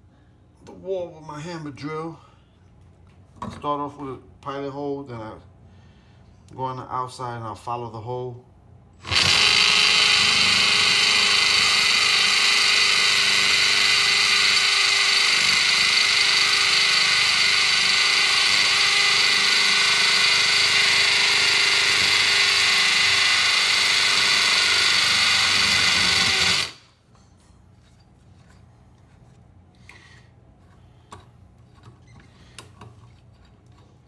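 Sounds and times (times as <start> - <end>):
hammer drill boring into wall: 9.0 - 26.9.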